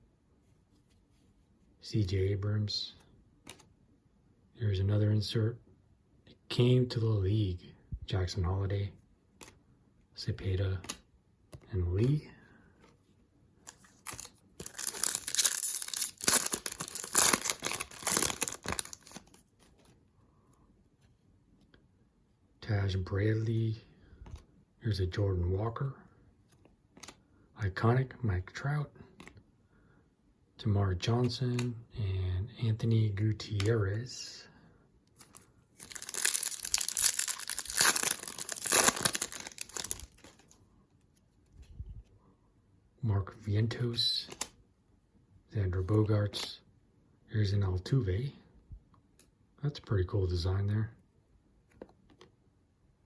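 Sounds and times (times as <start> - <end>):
foil wrapper tearing and crinkling: 14.1 - 19.4, 35.8 - 40.5.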